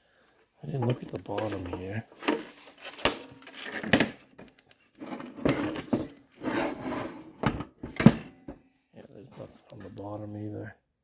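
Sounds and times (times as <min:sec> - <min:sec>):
metal rubbing and scraping: 0:04.9 - 0:07.5.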